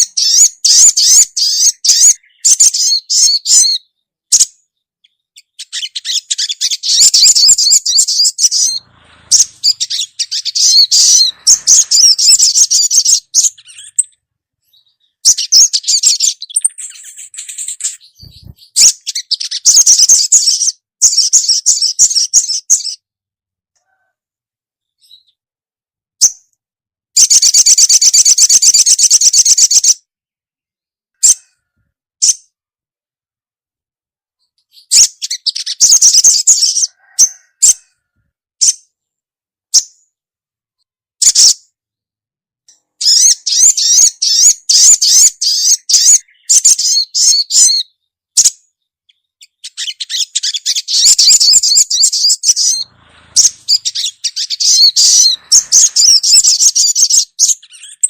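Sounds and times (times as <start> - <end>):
bird chattering trills: 5.4 - 21.8, 49.5 - 58.0
bird sharp chips: 15.2 - 21.6, 49.4 - 58.0.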